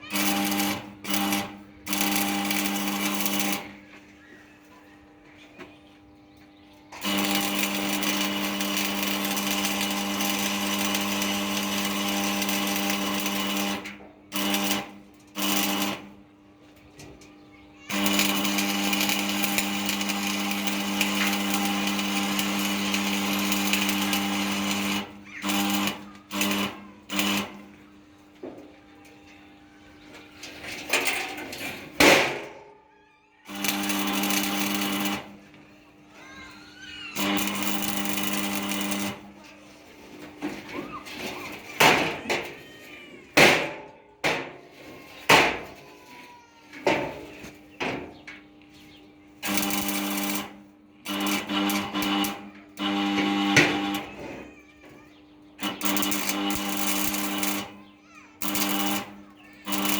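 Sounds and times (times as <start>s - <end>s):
power tool motor running: 0.0s - 4.0s, 7.0s - 16.2s, 17.8s - 27.9s, 33.5s - 39.4s, 49.4s - 59.9s.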